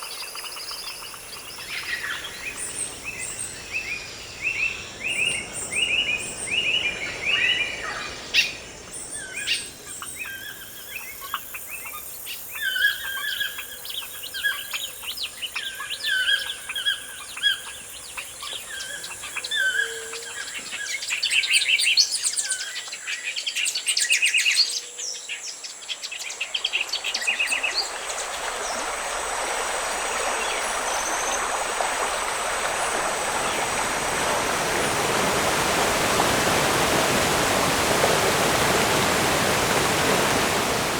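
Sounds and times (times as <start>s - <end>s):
flowing water rushing: 0.0s - 8.6s, 26.5s - 40.9s.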